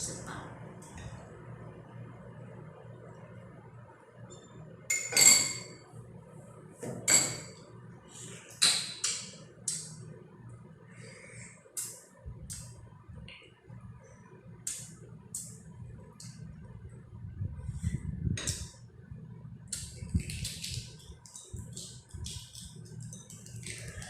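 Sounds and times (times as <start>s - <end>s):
egg being tapped and cracked: 19.8s - 24.0s.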